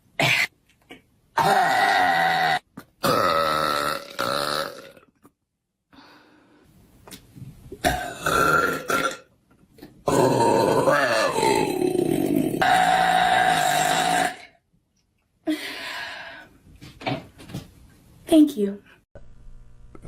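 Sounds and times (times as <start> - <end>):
woman burping: 1.4 - 5.1, 7.8 - 9.3, 10.0 - 14.6.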